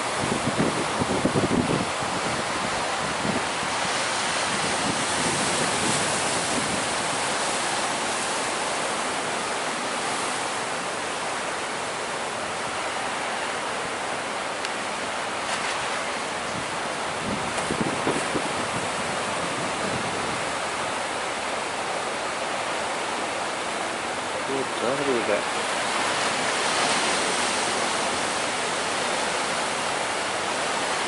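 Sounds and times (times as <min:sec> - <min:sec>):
wind buffeting microphone: 0:00.0 - 0:07.7, 0:15.8 - 0:20.8
waves breaking: 0:00.0 - 0:31.0.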